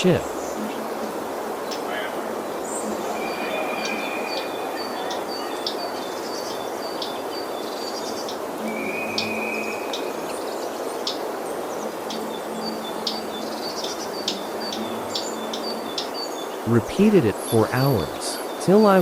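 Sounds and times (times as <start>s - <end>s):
long whistled notes: 0.0s - 6.2s, 8.5s - 10.5s
small birds chirping: 0.0s - 19.0s
steady rushing background noise: 0.0s - 19.0s.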